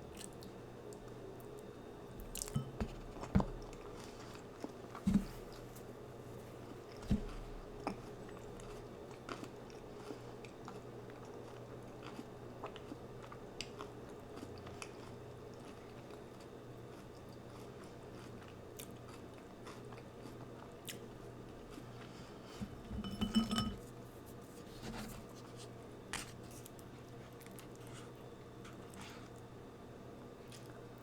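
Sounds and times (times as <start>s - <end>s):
steady low hum: 0.0s - 11.1s, 18.7s - 31.0s
chewing food: 0.1s - 22.3s.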